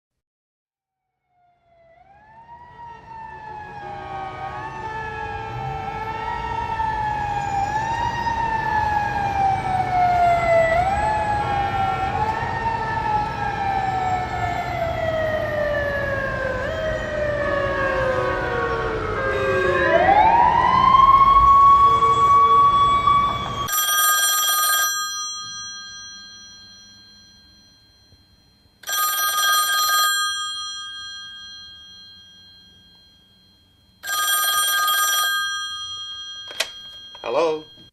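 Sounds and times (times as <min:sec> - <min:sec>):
whistling siren-like tone: 0:01.0 - 0:23.7
bell ringing: 0:23.7 - 0:37.9.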